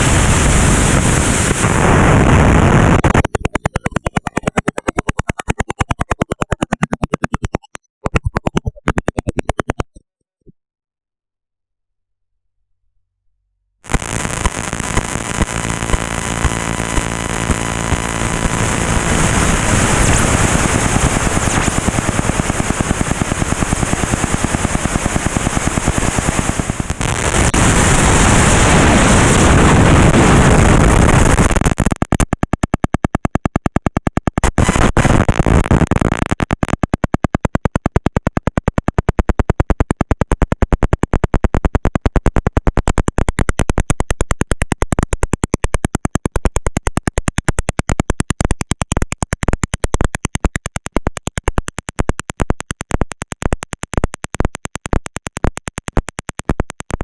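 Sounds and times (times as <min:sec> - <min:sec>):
rapid regular audio stutter: 0:00.0 - 0:10.0, 0:13.9 - 0:57.0
low hum: 0:13.1 - 0:30.8
loud noisy rumble: 0:14.8 - 0:31.2.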